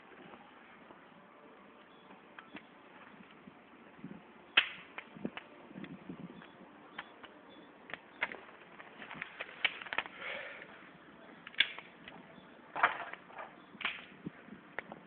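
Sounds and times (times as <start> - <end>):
bonfire crackling and popping: 4.6 - 10.3, 11.3 - 12.2, 13.8 - 15.0.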